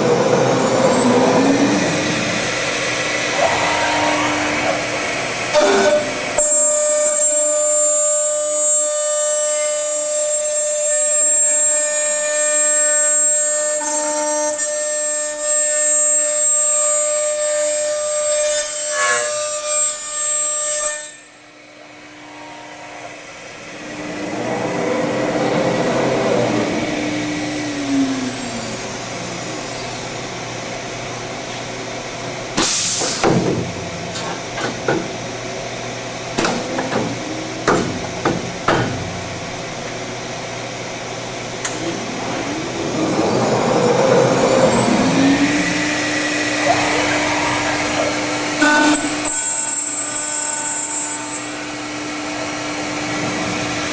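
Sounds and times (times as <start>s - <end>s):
machine winding down hum: 0.0s - 8.8s, 21.8s - 32.6s, 33.7s - 53.9s
machine spindle high whine: 0.0s - 33.0s, 33.7s - 53.9s.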